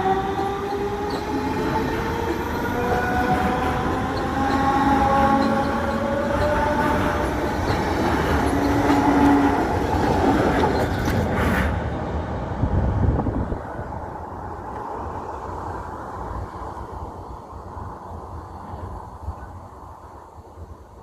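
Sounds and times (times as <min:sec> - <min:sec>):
train wheel squealing: 0:00.0 - 0:11.5
train rumbling along track: 0:00.0 - 0:21.0.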